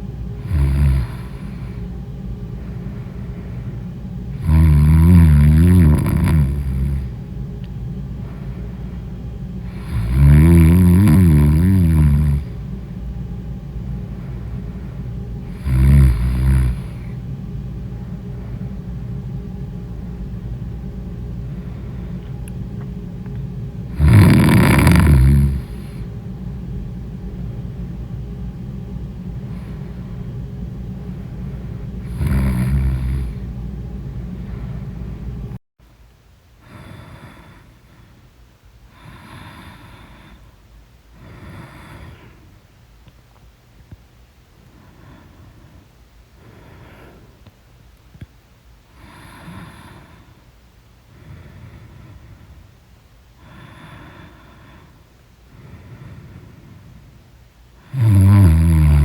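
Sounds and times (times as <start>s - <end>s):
steady low hum: 0.0s - 59.0s
person snoring loudly: 0.4s - 1.8s, 4.3s - 7.2s, 9.6s - 12.6s, 15.4s - 17.2s, 23.9s - 26.2s, 29.4s - 30.1s, 32.0s - 33.5s, 49.0s - 50.2s, 57.8s - 59.0s.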